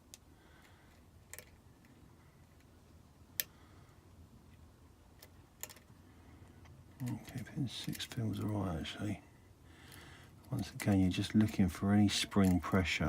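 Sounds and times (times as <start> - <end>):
lock pick metal clicks: 0.0 - 2.0, 5.1 - 5.9.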